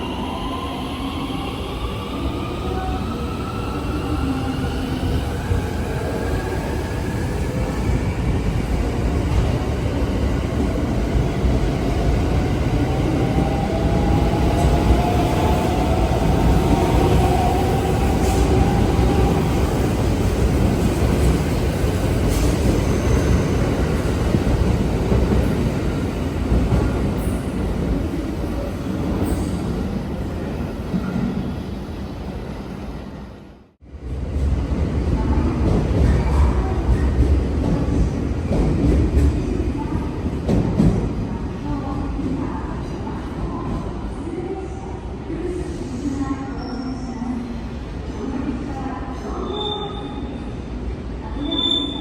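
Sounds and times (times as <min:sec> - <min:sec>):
train wheels rumbling on rails: 0:33.9 - 0:41.3.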